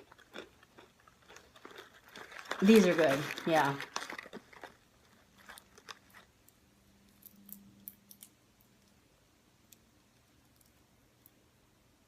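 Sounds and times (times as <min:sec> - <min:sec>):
popcorn being chewed: 0:00.0 - 0:09.0.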